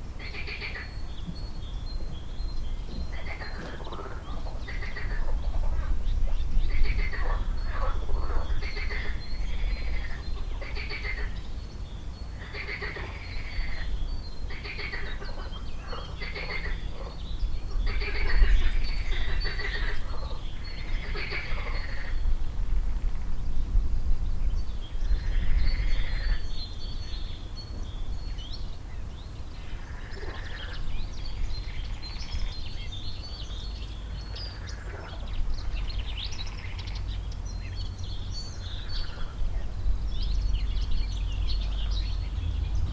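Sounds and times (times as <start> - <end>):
frogs croaking in chorus: 0.2 - 1.3, 2.9 - 23.2, 25.0 - 27.6, 29.5 - 42.5
steady low rumble: 33.6 - 42.9.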